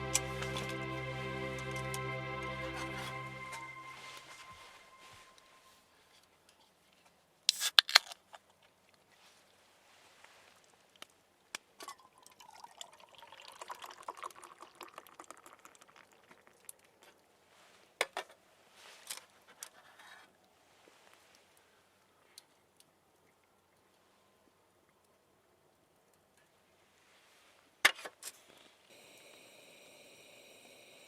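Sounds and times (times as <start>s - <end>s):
liquid pouring into container: 11.8s - 17.1s.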